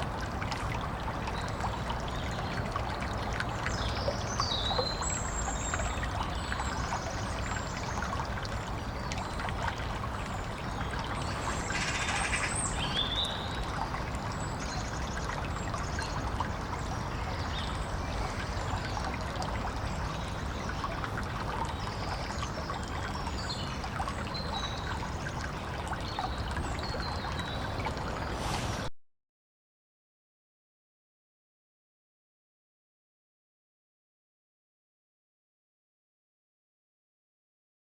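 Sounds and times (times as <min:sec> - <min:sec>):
stream trickling: 0:00.0 - 0:28.9.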